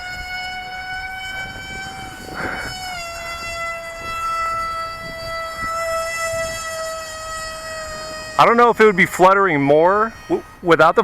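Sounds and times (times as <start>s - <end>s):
low wind rumble: 0.0s - 11.0s
model plane motor whining: 0.0s - 11.0s.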